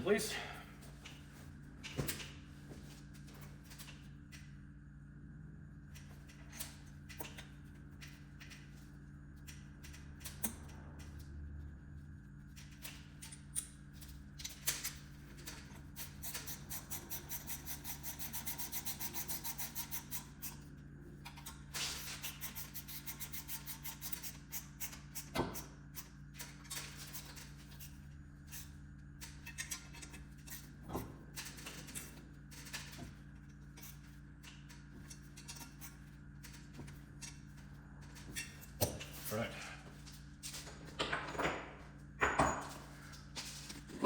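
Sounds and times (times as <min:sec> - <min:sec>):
steady low hum: 0:00.0 - 0:44.0
rapid ratchet clicking: 0:14.4 - 0:20.6, 0:21.3 - 0:25.4.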